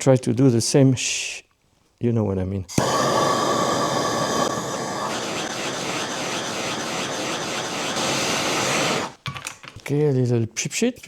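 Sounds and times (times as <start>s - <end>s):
heating tool hissing: 2.7s - 9.2s.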